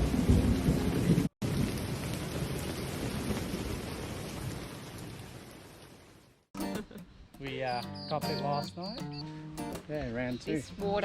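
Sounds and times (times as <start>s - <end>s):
thunder rumbling: 0.0s - 5.3s
heavy rain pouring: 0.0s - 6.5s.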